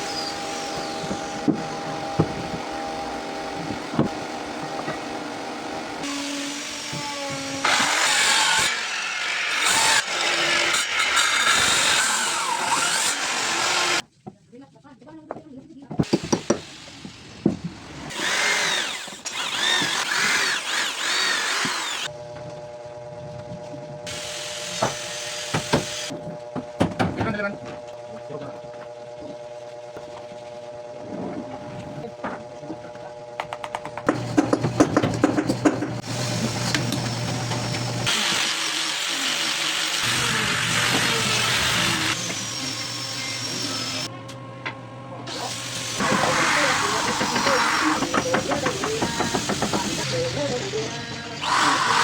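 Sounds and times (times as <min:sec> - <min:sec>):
power tool cutting wood: 0:00.0 - 0:14.0, 0:18.0 - 0:22.1, 0:24.1 - 0:26.1, 0:36.0 - 0:44.1, 0:45.2 - 0:52.0.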